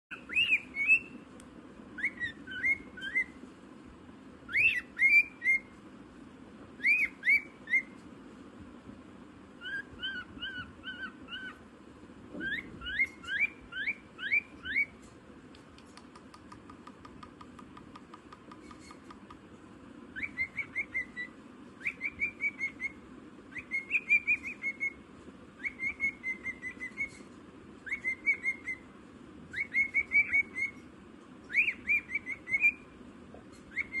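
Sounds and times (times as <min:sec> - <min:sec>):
parrot whistling and chirping: 0:00.1 - 0:01.2, 0:01.9 - 0:03.4, 0:04.5 - 0:05.8, 0:06.8 - 0:08.0, 0:09.6 - 0:11.6, 0:12.3 - 0:15.0, 0:20.1 - 0:25.0, 0:25.6 - 0:28.9, 0:29.5 - 0:34.0.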